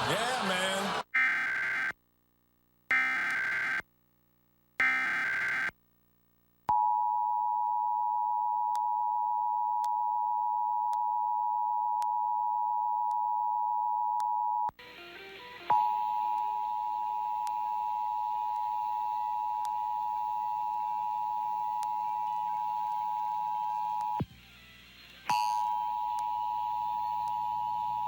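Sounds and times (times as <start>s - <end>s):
buzzy digital data bursts: 4.8s - 5.7s.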